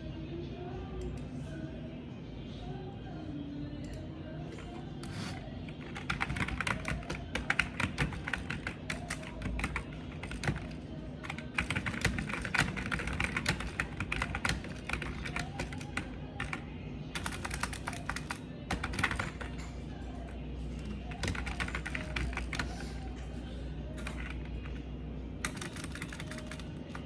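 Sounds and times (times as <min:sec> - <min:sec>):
typing on a keyboard: 0:05.7 - 0:19.7, 0:20.8 - 0:22.9, 0:24.0 - 0:24.8, 0:25.4 - 0:27.0.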